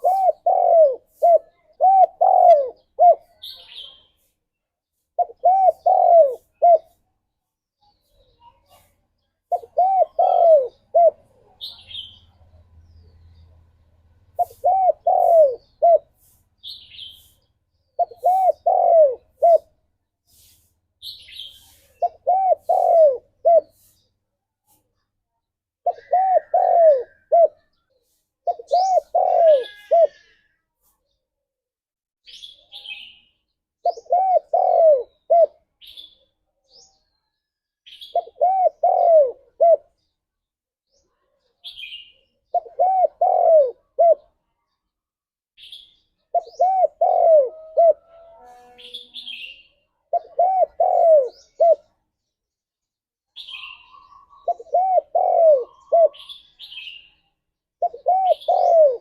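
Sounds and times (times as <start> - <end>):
dove cooing: 0.0 - 3.4, 5.2 - 7.0, 9.5 - 11.6, 14.4 - 16.2, 18.0 - 19.8, 22.0 - 23.8, 25.8 - 27.8, 28.4 - 30.4, 33.8 - 35.6, 38.1 - 40.0, 42.5 - 44.3, 46.3 - 49.0, 50.1 - 51.9, 53.4 - 56.4, 57.8 - 59.0
small birds chirping: 0.0 - 31.6, 32.2 - 59.0.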